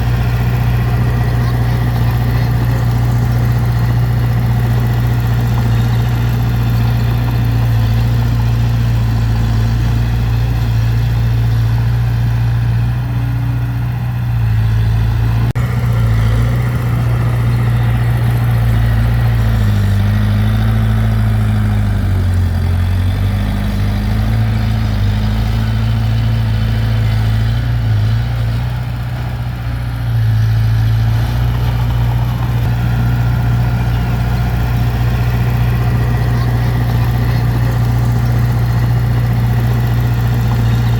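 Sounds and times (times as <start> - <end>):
heavy diesel engine running: 0.0 - 40.9.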